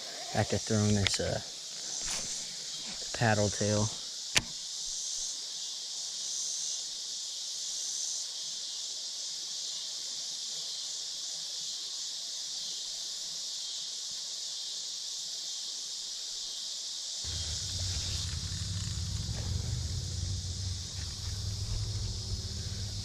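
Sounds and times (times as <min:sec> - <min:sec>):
high-pitched insect chorus: 0:00.0 - 0:23.0
low rumble: 0:17.3 - 0:23.0.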